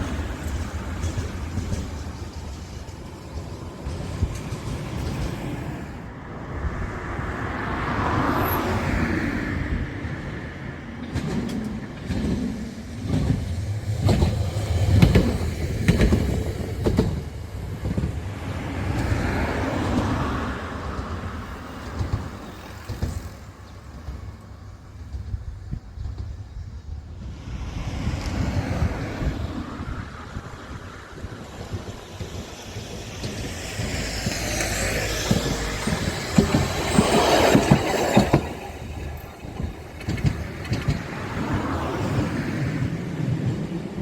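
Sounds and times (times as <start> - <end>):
vehicles passing by: 27.4 - 43.2
heavy vehicle rumble: 28.0 - 43.0.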